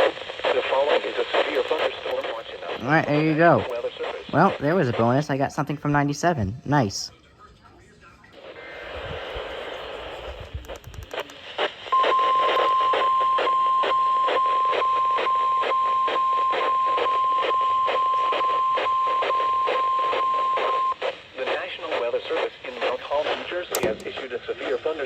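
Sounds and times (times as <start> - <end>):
crackling radio static: 0.0 - 7.1, 8.3 - 25.0
long steady warning beep: 11.9 - 21.0.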